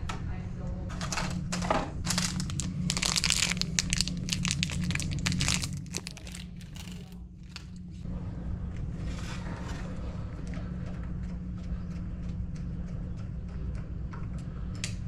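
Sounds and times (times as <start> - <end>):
steady low hum: 0.0 - 15.0
crinkling handling noise: 2.0 - 8.0.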